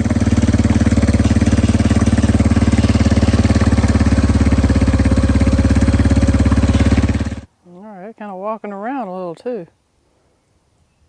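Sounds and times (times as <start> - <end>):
small engine idling: 0.0 - 7.5.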